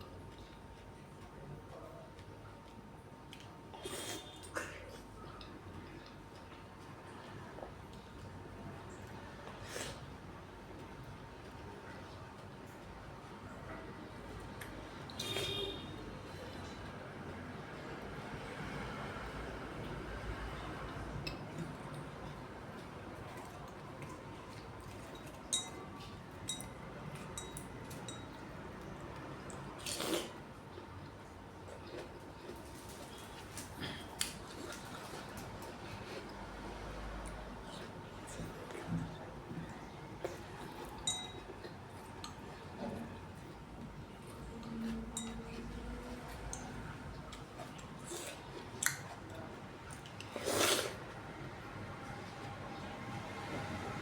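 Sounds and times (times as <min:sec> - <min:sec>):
cutlery clinking against dish: 0:25.0 - 0:28.4, 0:41.0 - 0:41.5.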